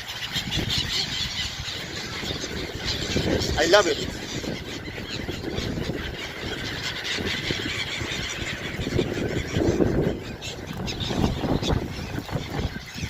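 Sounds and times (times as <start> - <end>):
seagulls squealing cries: 0.0 - 13.0.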